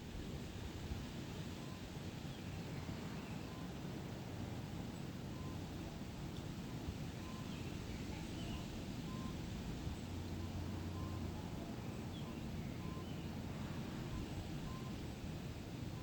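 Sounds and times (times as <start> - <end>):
distant bird calls: 7.2 - 15.3.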